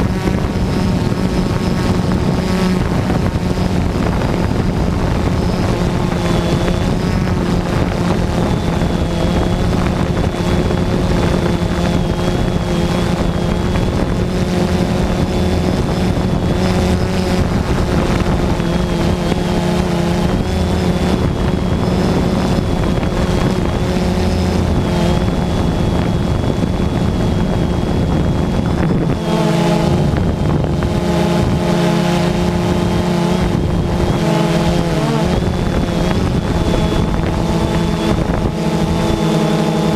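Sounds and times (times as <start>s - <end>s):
quadcopter motors droning: 0.0s - 39.9s
wind on microphone: 0.0s - 39.9s.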